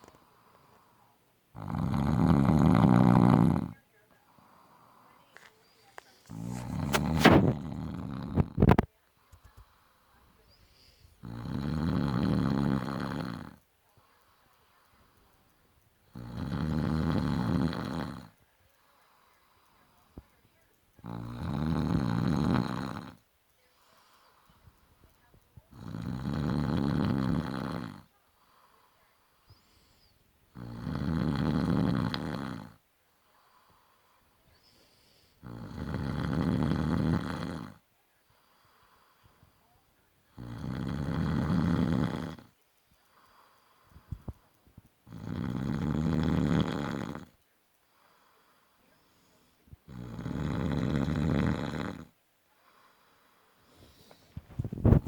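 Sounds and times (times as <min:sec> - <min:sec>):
man snoring loudly: 0:01.6 - 0:03.8, 0:06.3 - 0:08.6, 0:11.2 - 0:13.6, 0:16.1 - 0:18.3, 0:21.0 - 0:23.2, 0:25.7 - 0:28.1, 0:30.5 - 0:32.8, 0:35.4 - 0:37.8, 0:40.4 - 0:42.5, 0:45.1 - 0:47.4, 0:49.9 - 0:52.1
soft breathing out: 0:04.3 - 0:07.8, 0:08.4 - 0:11.2, 0:23.6 - 0:25.3, 0:33.1 - 0:35.4, 0:42.9 - 0:44.8, 0:47.8 - 0:49.7, 0:52.5 - 0:55.0
faint clicks: 0:08.3 - 0:11.2, 0:42.4 - 0:45.2.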